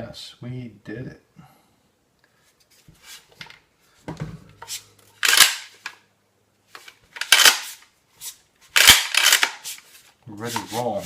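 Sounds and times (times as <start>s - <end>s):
metallic clicks of shotgun handling: 5.2s - 6.0s, 7.2s - 7.7s, 8.8s - 9.6s.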